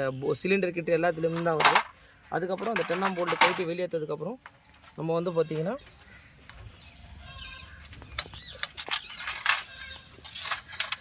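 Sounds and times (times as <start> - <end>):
birds chirping: 0.0 - 11.0
metal tools clinking: 1.3 - 1.9, 2.5 - 3.8, 8.5 - 11.0.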